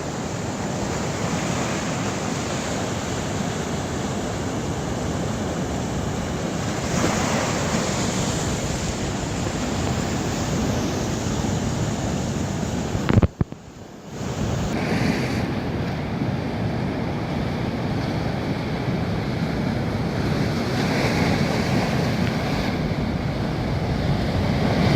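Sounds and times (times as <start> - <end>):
sea waves breaking on shore: 0.0 - 24.9
wind buffeting microphone: 3.4 - 16.6, 19.1 - 24.9.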